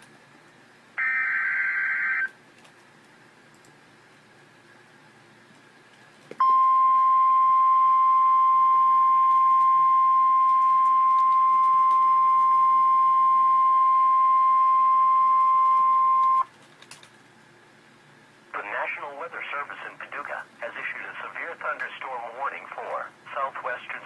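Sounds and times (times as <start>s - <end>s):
loud steady alarm beep: 1.0s - 2.3s, 6.4s - 16.4s.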